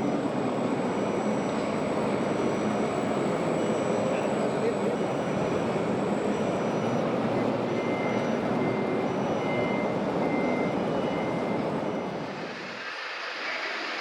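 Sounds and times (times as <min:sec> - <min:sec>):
reverse warning beeper: 0:00.9 - 0:12.2
loud rumbling hiss: 0:12.2 - 0:14.0.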